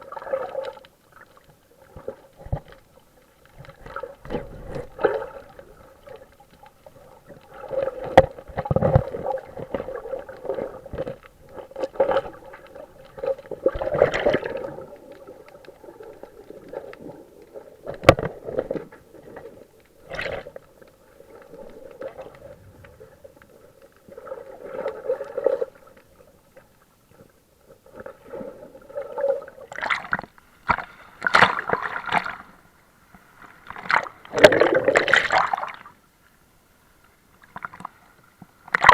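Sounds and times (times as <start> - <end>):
water sloshing and gurgling: 0.0 - 36.0
faint steady hum: 0.0 - 38.9.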